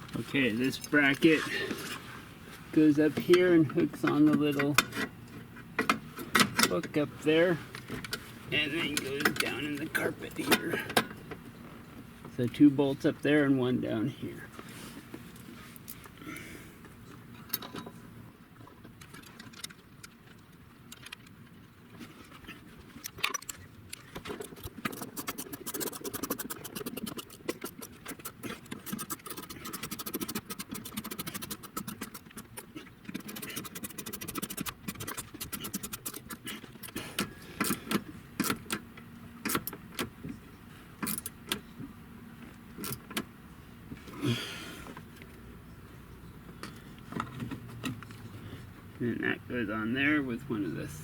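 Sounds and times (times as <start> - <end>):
hand ratchet clicking: 24.5 - 37.0.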